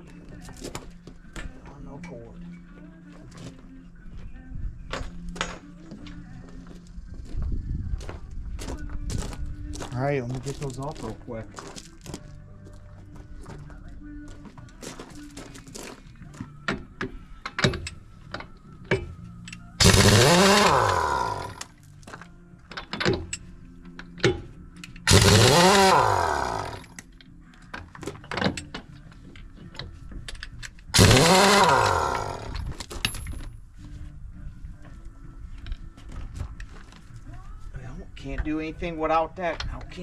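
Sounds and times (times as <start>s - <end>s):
impact wrench whirring: 19.8s - 21.7s, 25.1s - 26.9s, 31.0s - 32.6s.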